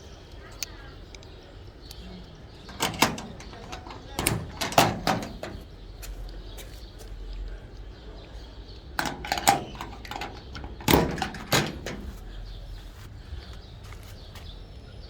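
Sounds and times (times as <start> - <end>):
sharp knocks and clicks: 2.6 - 5.7, 9.0 - 12.2.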